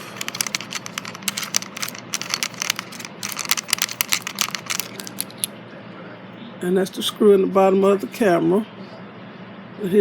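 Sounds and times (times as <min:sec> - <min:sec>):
small clicks and rattles: 0:00.0 - 0:05.5.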